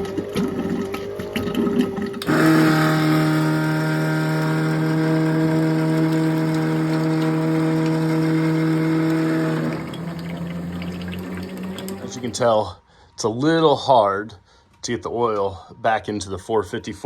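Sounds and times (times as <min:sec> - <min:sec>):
electric pump motor humming: 0:00.0 - 0:12.5.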